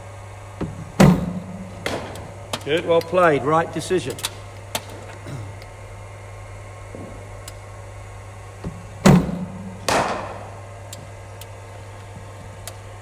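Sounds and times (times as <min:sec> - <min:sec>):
electrical hum: 0:00.0 - 0:13.0
bowling machine firing ball: 0:00.6 - 0:02.6, 0:08.7 - 0:10.6
bat striking ball: 0:01.0 - 0:02.3, 0:09.1 - 0:10.6.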